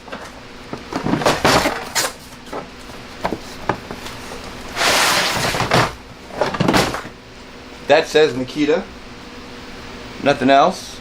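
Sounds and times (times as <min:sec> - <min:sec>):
plastic case scraping: 0:03.2 - 0:07.1.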